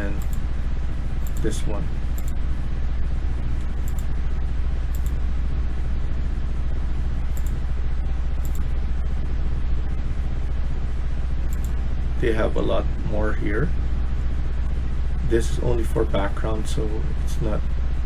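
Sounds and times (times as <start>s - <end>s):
low rumble and hum: 0.0s - 18.0s
faint clicks: 0.2s - 0.4s, 1.2s - 1.5s, 2.2s - 2.4s, 3.8s - 4.1s, 4.9s - 5.2s, 7.4s - 7.6s, 8.4s - 8.6s, 11.5s - 11.8s.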